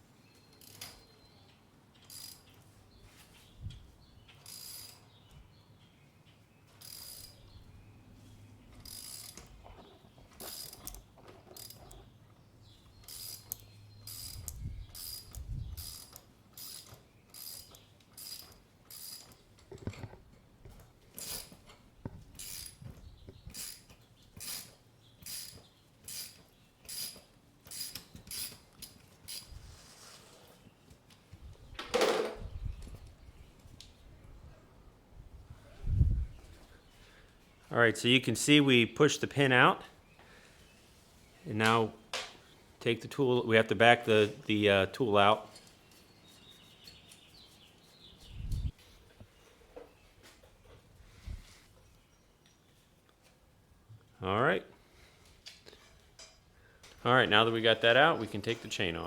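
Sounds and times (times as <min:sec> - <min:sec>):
ratchet wrench clicking: 0:00.6 - 0:00.9, 0:02.1 - 0:02.6, 0:04.4 - 0:05.0, 0:06.8 - 0:07.4, 0:08.8 - 0:09.5, 0:10.4 - 0:11.0, 0:11.6 - 0:12.0, 0:13.0 - 0:19.4, 0:22.3 - 0:22.8, 0:23.5 - 0:29.5.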